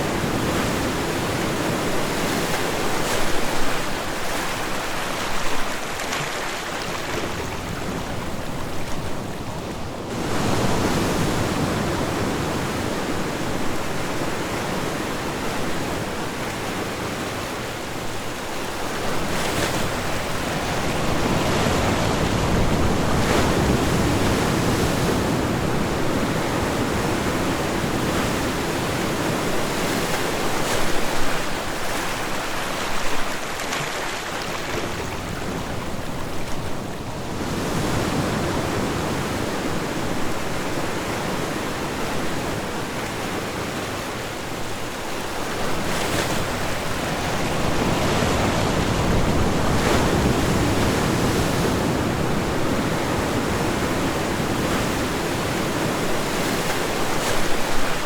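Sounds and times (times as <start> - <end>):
ocean waves on shore: 0.0 - 58.0
wind on microphone: 6.8 - 32.4, 45.4 - 58.0.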